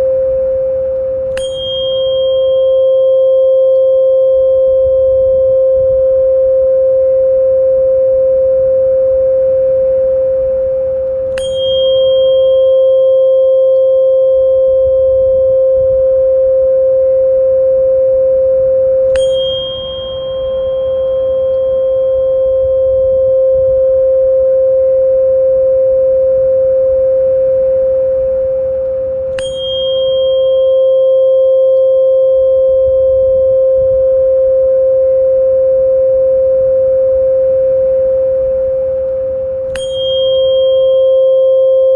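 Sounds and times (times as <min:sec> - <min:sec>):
steady pure tone: 0:00.0 - 0:41.9
bell-like chime: 0:01.3 - 0:04.6, 0:11.3 - 0:15.1, 0:19.1 - 0:23.2, 0:29.3 - 0:33.2, 0:39.7 - 0:41.9.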